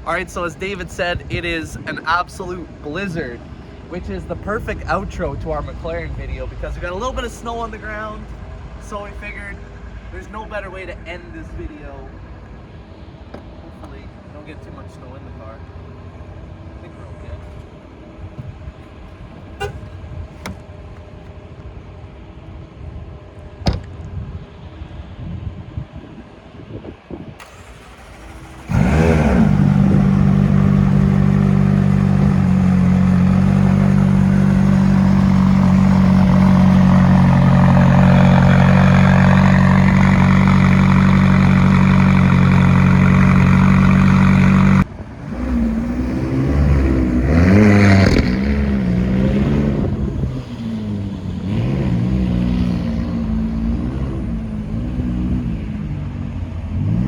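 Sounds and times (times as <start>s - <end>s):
car engine revving: 27.4s - 55.8s.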